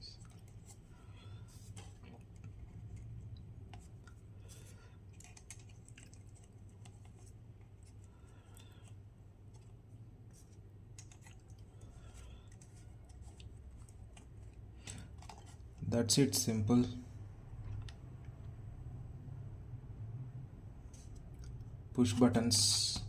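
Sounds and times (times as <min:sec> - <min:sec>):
clicks and scrapes of small parts: 0:03.8 - 0:09.7, 0:10.3 - 0:15.8.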